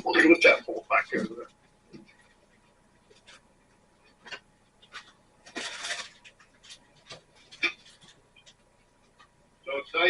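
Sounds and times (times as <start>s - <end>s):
rustling scrape: 4.9s - 8.2s.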